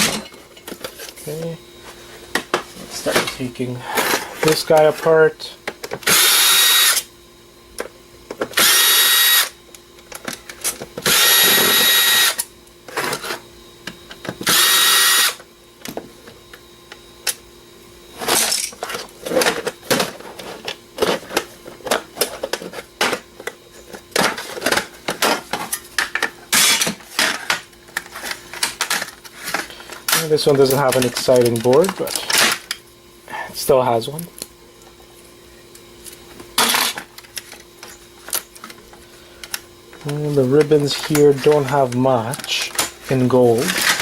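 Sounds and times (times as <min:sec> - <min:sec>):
power drill running: 0:06.0 - 0:07.1, 0:08.5 - 0:09.6, 0:11.0 - 0:12.4, 0:14.3 - 0:15.4.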